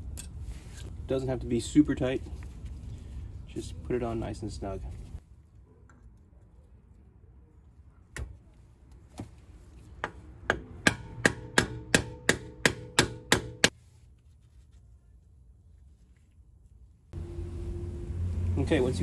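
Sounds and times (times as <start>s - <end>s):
hammer striking metal cap: 10.0s - 13.7s.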